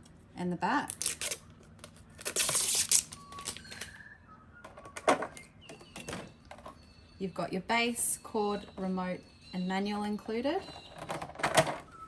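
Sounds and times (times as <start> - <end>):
plastic film peeling hiss: 2.2 - 3.6.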